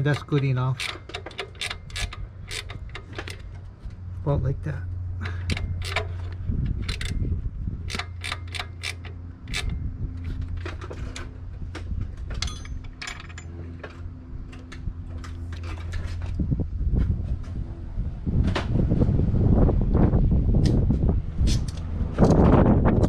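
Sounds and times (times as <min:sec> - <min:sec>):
metallic clicks of hand tools: 0:00.0 - 0:03.5, 0:05.2 - 0:07.2, 0:07.9 - 0:11.3
steady low hum: 0:00.0 - 0:23.0.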